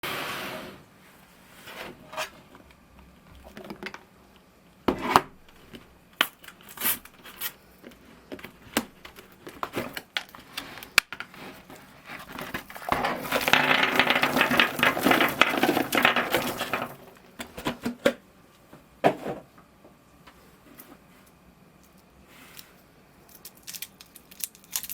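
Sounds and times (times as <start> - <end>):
chocolate wrappers crinkling: 6.2 - 17.3, 23.2 - 24.9.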